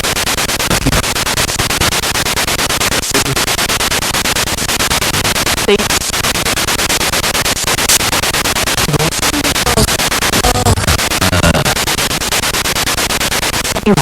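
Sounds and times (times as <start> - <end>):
radio static pulsing: 0.0 - 14.0
snatches of broadcast sound: 0.0 - 14.0.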